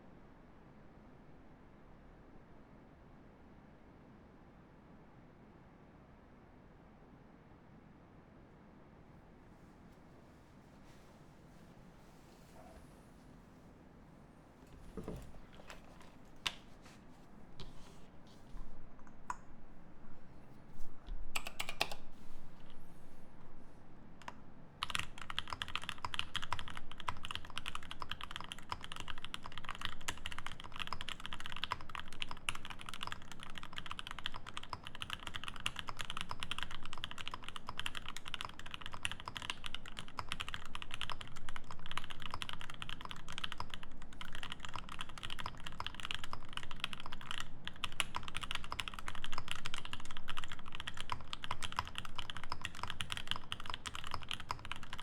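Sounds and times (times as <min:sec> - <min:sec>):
fast mechanical keyboard typing: 0:21.4 - 0:22.0, 0:24.2 - 0:55.0.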